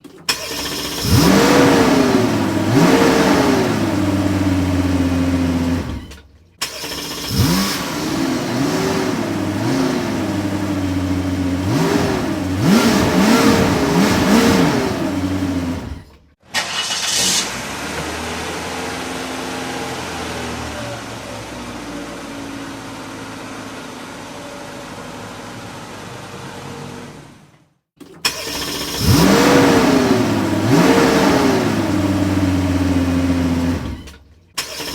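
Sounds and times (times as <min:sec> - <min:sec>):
car engine running steadily: 0:00.0 - 0:27.4, 0:28.2 - 0:34.9
car engine revving: 0:00.3 - 0:27.4, 0:28.2 - 0:34.9.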